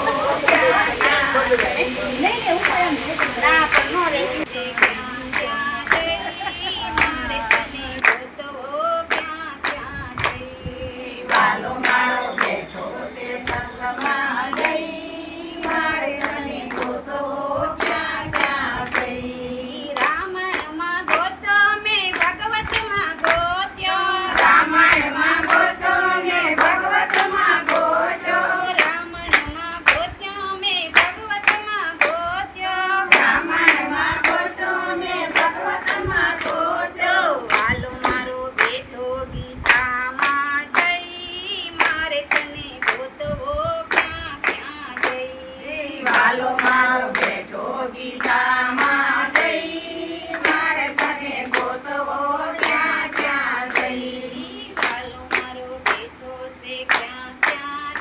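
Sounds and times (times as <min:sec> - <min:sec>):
hand claps: 0:00.0 - 0:06.2, 0:06.9 - 0:08.3, 0:09.1 - 0:10.5, 0:11.3 - 0:14.8, 0:15.6 - 0:17.0, 0:17.8 - 0:19.2, 0:20.0 - 0:21.4, 0:22.1 - 0:23.5, 0:24.4 - 0:25.8, 0:26.5 - 0:30.1, 0:30.9 - 0:32.2, 0:33.0 - 0:36.8, 0:37.4 - 0:38.9, 0:39.6 - 0:41.0, 0:41.7 - 0:43.1, 0:43.9 - 0:54.1, 0:54.8 - 0:56.2, 0:56.8 - 0:58.0
women singing in chorus: 0:00.0 - 0:58.0.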